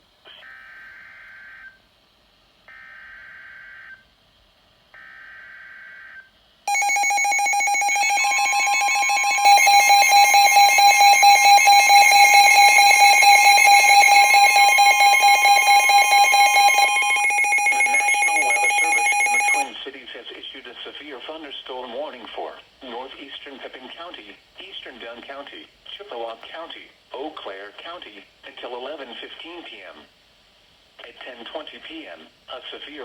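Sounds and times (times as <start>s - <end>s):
harsh two-tone attention alarm: 6.7s - 19.8s
warbling digital data screech: 6.8s - 19.7s.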